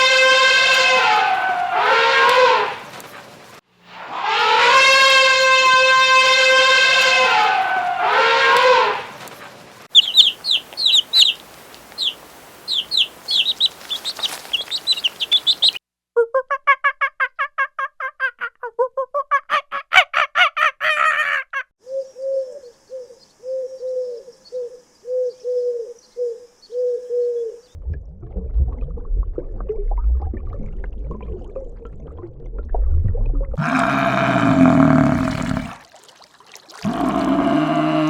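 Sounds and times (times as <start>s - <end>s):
loud animal call: 0.0s - 2.9s, 4.0s - 9.2s, 33.6s - 35.8s, 36.8s - 38.0s
short animal calls: 33.6s - 35.8s.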